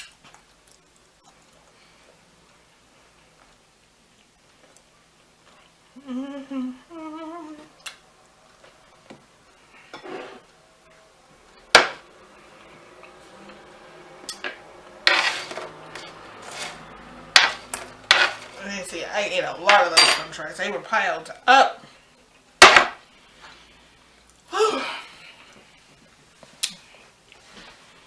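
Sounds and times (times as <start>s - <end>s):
woman humming: 6.0s - 7.8s, 24.5s - 25.1s
cutlery and dishes clattering: 15.1s - 18.7s, 19.7s - 20.4s.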